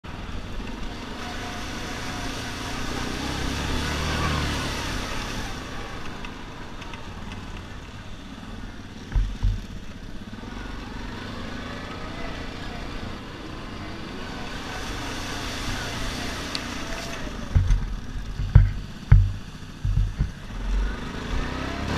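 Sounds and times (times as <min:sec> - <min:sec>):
atv engine running: 0:00.1 - 0:21.9
low thumps: 0:09.1 - 0:09.9, 0:17.5 - 0:20.7.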